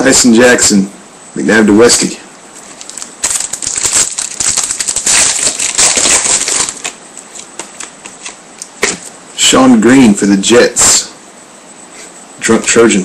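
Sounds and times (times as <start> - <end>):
cards flipped by hand: 2.6 - 9.1.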